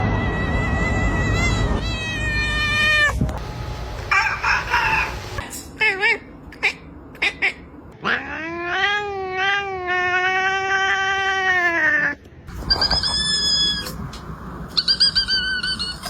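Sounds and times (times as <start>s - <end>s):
cat yowling: 8.0s - 14.0s
cat high-pitched calls: 14.7s - 16.0s.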